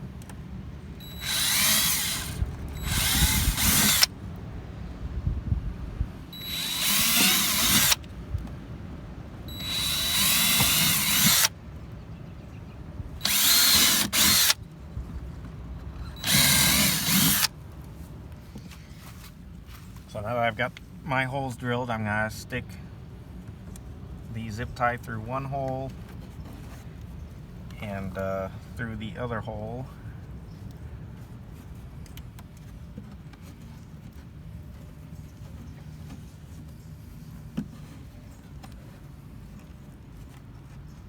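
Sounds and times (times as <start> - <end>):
power drill whining: 1.0 - 4.1, 6.3 - 8.1, 9.5 - 11.5, 13.2 - 14.6, 16.1 - 17.5.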